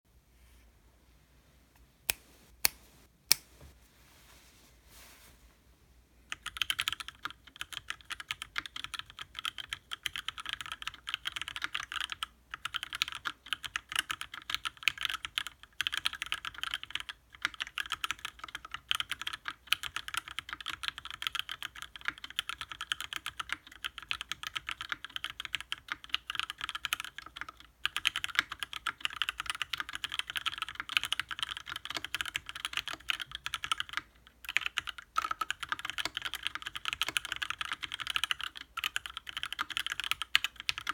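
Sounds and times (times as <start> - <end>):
mechanical keyboard typing: 6.3 - 40.9.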